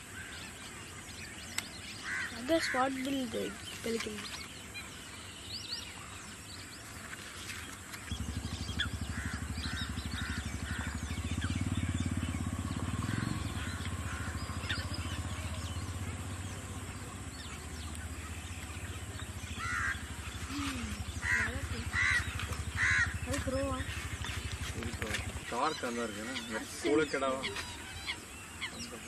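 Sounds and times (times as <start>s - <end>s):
birds chirping: 0.0s - 29.0s
small engine humming: 7.0s - 29.0s.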